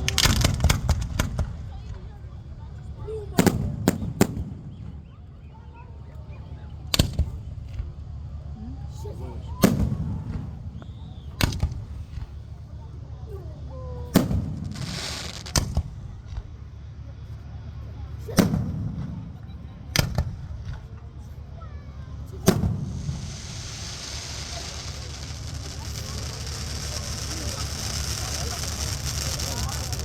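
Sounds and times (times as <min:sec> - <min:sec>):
fireworks crackle: 0:00.0 - 0:05.0, 0:09.6 - 0:12.9, 0:14.0 - 0:16.9, 0:20.0 - 0:30.0
fireworks booming: 0:00.0 - 0:05.2, 0:09.4 - 0:12.9, 0:14.0 - 0:16.7, 0:18.3 - 0:21.2, 0:21.9 - 0:30.0.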